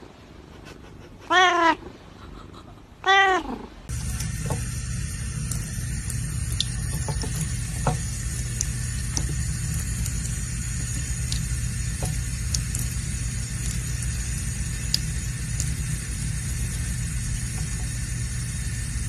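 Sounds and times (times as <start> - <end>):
cat meowing: 1.3 - 1.9, 3.0 - 3.7
low hum: 3.9 - 19.0.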